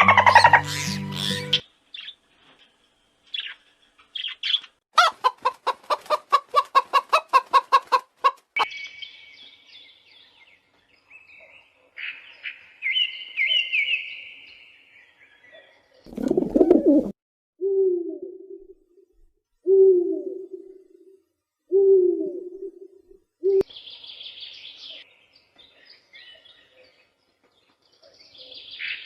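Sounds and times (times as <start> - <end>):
hen clucking rapidly: 0.0 - 1.6, 5.0 - 8.6.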